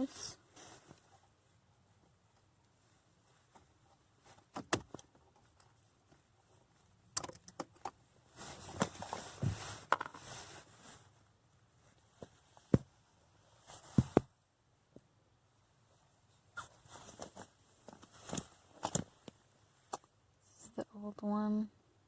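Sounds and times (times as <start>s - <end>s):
sharp clicks and knocks: 7.1s - 8.0s.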